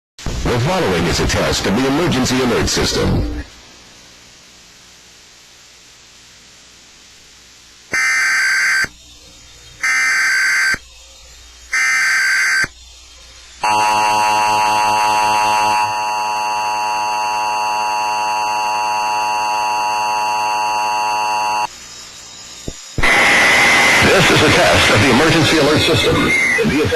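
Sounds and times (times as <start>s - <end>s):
digital header data bursts: 7.9s - 26.9s.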